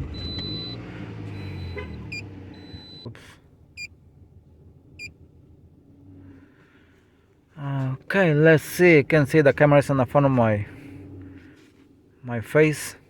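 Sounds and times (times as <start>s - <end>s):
car engine starting and running: 0.0s - 13.0s
short electronic beeps: 0.1s - 0.8s, 1.4s - 3.1s.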